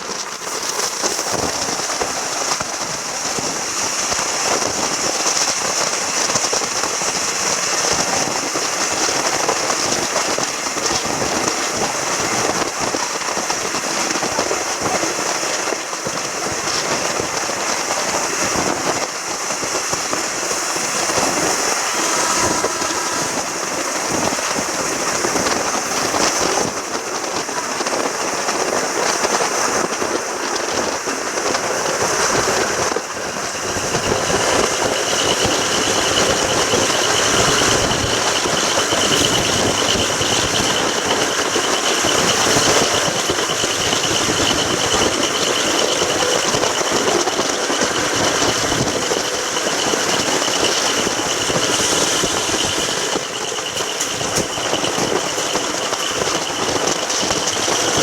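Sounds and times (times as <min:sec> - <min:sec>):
train rumbling and rattling: 0:00.0 - 0:58.0
steady high-pitched tone: 0:32.4 - 0:58.0.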